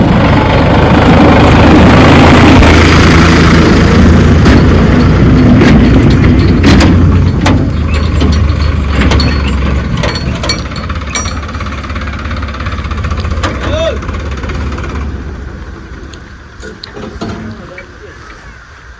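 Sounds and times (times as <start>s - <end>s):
heavy diesel machinery running: 0.0s - 18.9s
sharp knocks: 4.2s - 14.2s.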